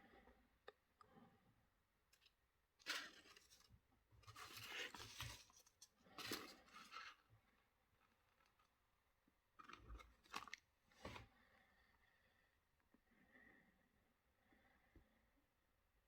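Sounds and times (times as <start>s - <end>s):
paper rustling and crinkling: 2.8s - 7.2s.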